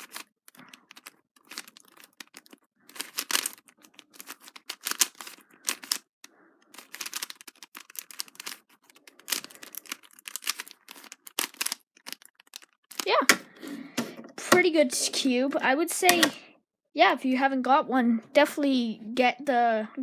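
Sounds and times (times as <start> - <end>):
plastic puzzle cube clicking: 0.8 - 6.0, 6.7 - 8.6, 9.2 - 14.8, 16.0 - 16.4.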